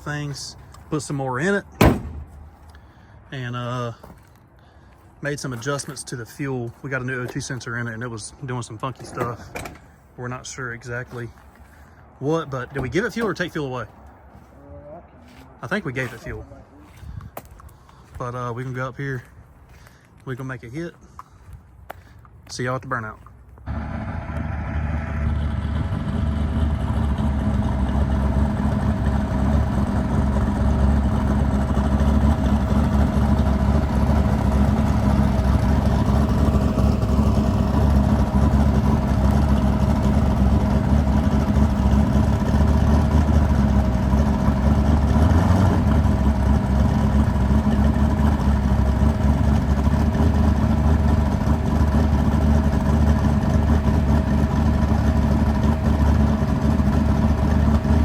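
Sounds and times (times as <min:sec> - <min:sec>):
drag car engine idling: 0:23.7 - 0:58.0.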